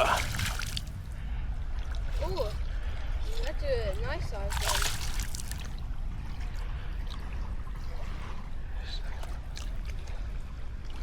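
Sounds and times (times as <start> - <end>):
water splashing and trickling: 0.0 - 11.0
wind rumble on microphone: 0.0 - 11.0.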